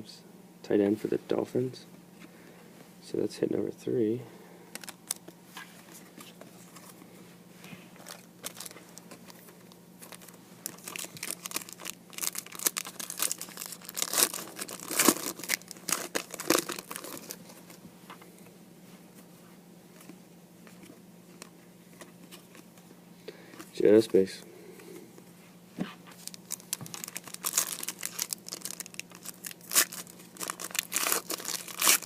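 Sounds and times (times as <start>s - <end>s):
faint steady hum: 0.0s - 32.0s
foil pack crinkling and tearing: 4.7s - 5.2s, 8.0s - 17.7s, 26.1s - 32.0s.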